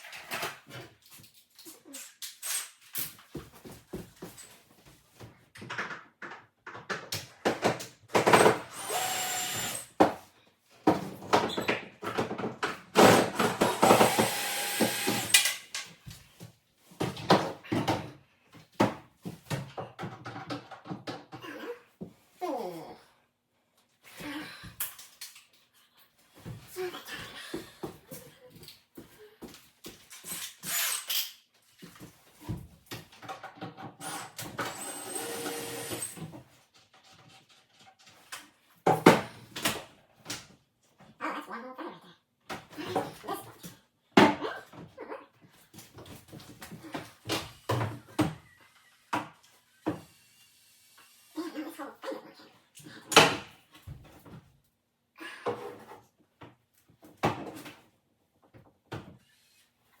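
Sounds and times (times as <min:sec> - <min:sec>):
kitchen cabinets being demolished: 0:07.4 - 0:10.2, 0:10.9 - 0:15.3.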